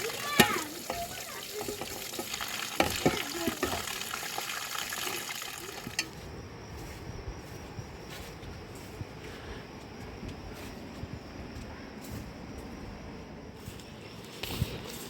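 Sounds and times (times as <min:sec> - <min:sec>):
food sizzling in a pan: 0:00.0 - 0:06.1.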